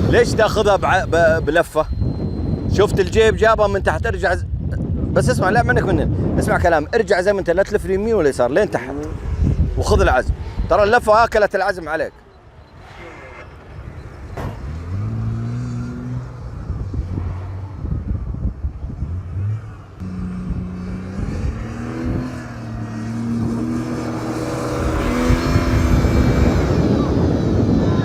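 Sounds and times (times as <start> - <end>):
off-road vehicle engine under load: 0.0 - 3.8, 12.0 - 28.0.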